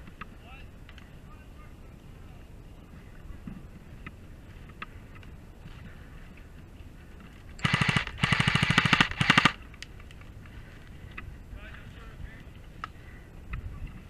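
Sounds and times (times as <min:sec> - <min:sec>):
airsoft rifle full-auto bursts: 0:07.6 - 0:09.6.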